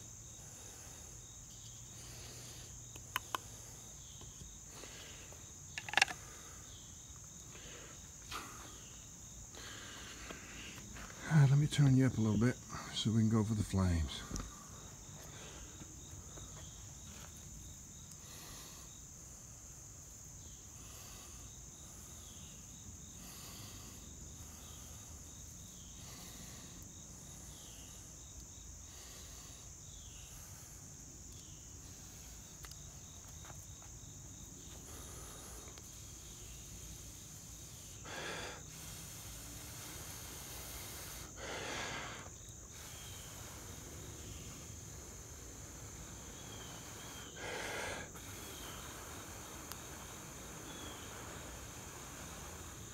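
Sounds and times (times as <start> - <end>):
crickets chirping: 0.0 - 52.9
breath blowing on tinder: 34.6 - 52.9.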